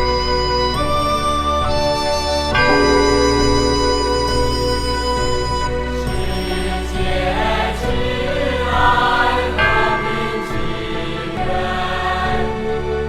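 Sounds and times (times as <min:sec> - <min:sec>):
held chords: 0:02.5 - 0:08.0, 0:09.6 - 0:13.0
choir-like singing: 0:02.6 - 0:13.0.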